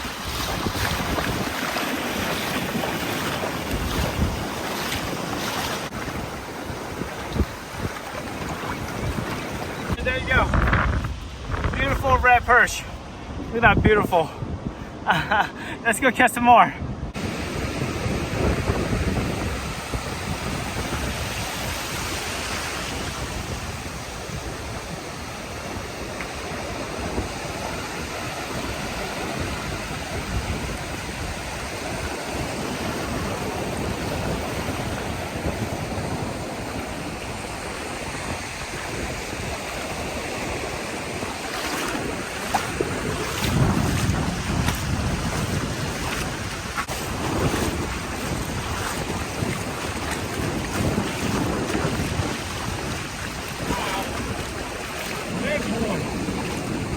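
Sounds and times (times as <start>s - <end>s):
wind on microphone: 0.0s - 15.8s, 16.7s - 56.9s
ocean surf on beach: 0.0s - 56.9s.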